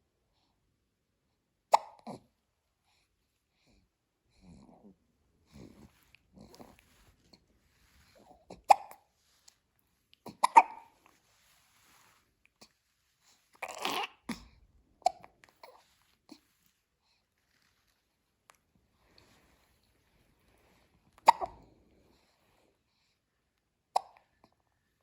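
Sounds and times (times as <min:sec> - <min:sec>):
baby hiccuping: 0:01.7 - 0:02.3, 0:08.5 - 0:09.1, 0:10.2 - 0:11.2, 0:13.6 - 0:15.8, 0:21.2 - 0:21.7, 0:23.9 - 0:24.3.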